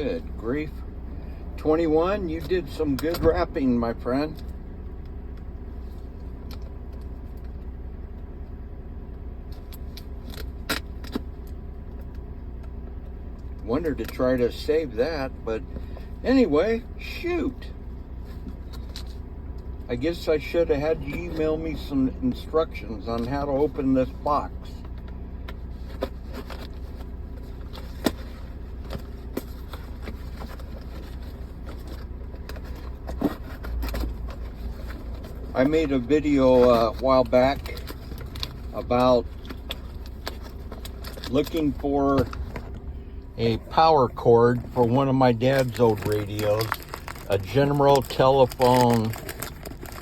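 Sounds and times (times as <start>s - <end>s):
steady low hum: 0.0s - 50.0s
cardboard crackles: 44.5s - 50.0s
cardboard packaging tearing: 45.6s - 50.0s.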